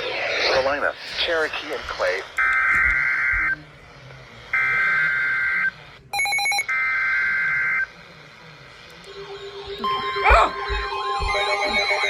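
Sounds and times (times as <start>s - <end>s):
buzzing digital screeches: 0.0s - 3.5s
pulsing multi-tone beep: 9.1s - 12.0s.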